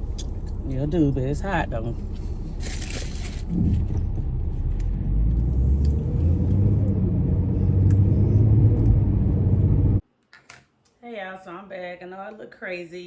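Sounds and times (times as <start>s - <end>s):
car rumble from inside cabin: 0.0s - 10.0s.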